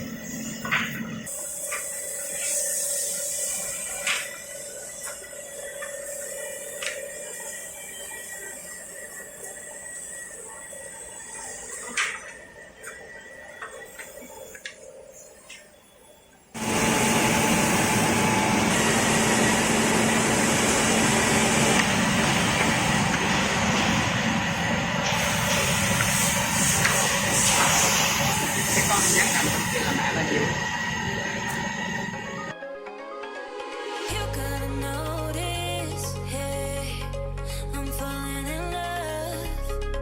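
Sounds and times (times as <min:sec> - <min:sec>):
woodworking machine motors running: 0:16.6 - 0:32.5.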